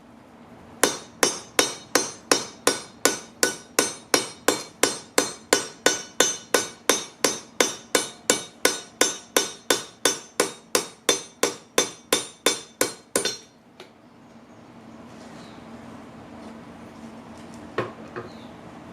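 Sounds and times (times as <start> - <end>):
hammer ringing on anvil: 0.8 - 13.6.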